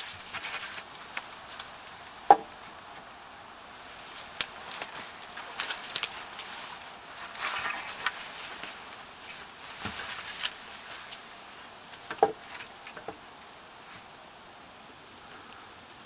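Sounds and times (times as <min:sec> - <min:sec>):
branches rustling and crunching: 0:00.0 - 0:14.2
wooden knocks: 0:02.3 - 0:02.5, 0:12.1 - 0:12.4.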